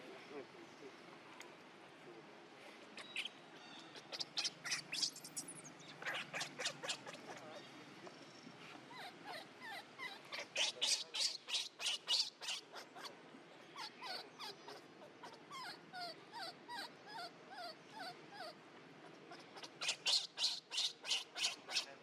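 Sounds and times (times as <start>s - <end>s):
soft chirping calls: 2.9s - 18.5s, 19.1s - 22.0s
baby monkey high squeaks: 4.0s - 7.4s, 9.0s - 12.9s, 19.6s - 21.9s.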